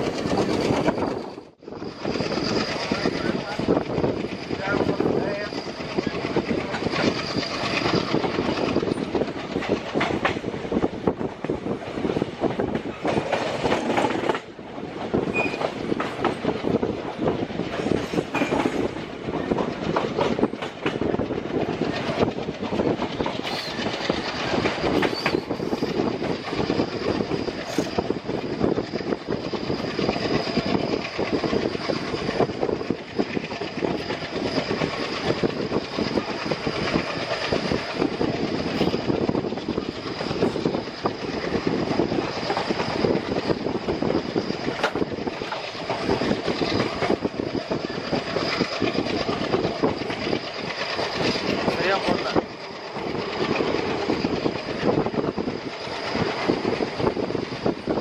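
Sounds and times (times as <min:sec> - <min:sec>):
train wheels clacking over rail joints: 0:05.7 - 0:10.5, 0:12.6 - 0:16.7, 0:17.7 - 0:26.9.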